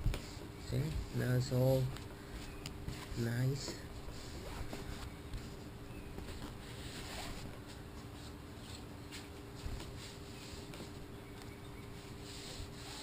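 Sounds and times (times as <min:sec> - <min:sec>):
faint steady hum: 0:00.0 - 0:13.0
hands brushing fabric: 0:02.4 - 0:11.1, 0:11.8 - 0:13.0.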